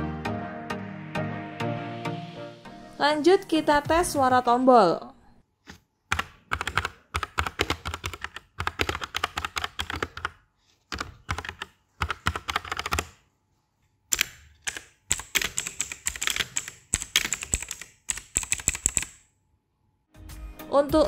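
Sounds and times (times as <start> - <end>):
mechanical keyboard typing: 6.1 - 13.2, 14.1 - 19.3.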